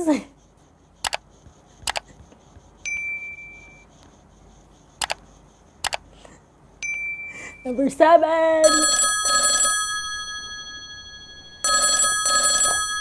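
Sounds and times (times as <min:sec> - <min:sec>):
sharp clicks: 0:01.0 - 0:02.4, 0:05.0 - 0:06.1.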